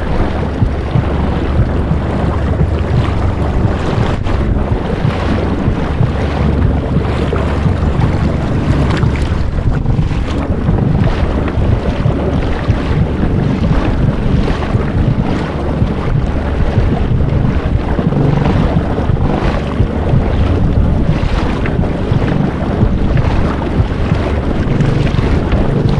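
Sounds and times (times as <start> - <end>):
waves washing against boat: 0.0 - 25.9
wind buffeting microphone: 0.0 - 25.9.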